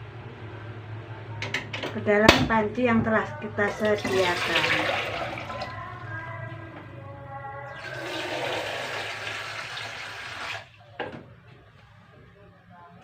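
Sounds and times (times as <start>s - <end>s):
water pouring into pot: 7.8s - 10.7s.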